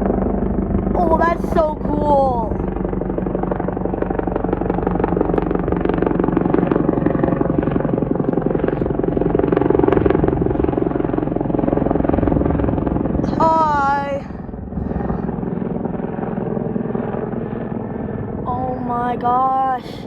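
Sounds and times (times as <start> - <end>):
helicopter engine hum: 0.0 - 20.0
helicopter rotor chop: 0.0 - 20.0.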